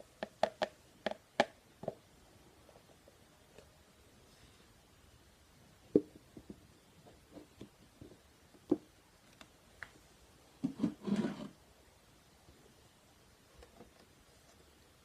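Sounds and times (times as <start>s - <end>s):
plastic containers rubbing and clattering: 10.6s - 11.6s.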